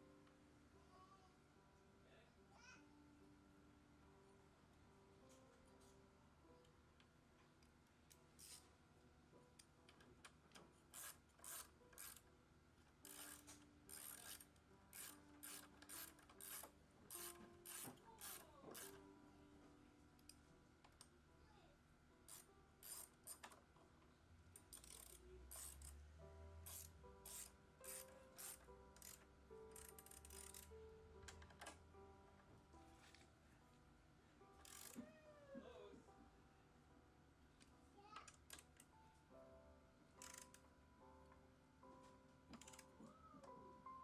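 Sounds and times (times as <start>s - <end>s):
ratchet wrench clicking: 8.4s - 8.6s, 10.9s - 12.2s, 13.0s - 19.0s, 22.3s - 23.6s, 24.6s - 26.0s, 26.6s - 30.8s, 34.6s - 35.1s, 40.2s - 40.6s, 42.6s - 42.8s.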